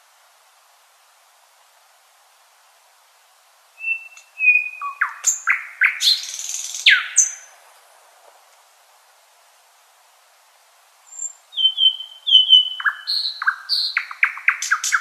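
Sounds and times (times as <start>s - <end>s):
nightingale singing: 3.8s - 7.6s, 11.0s - 15.0s.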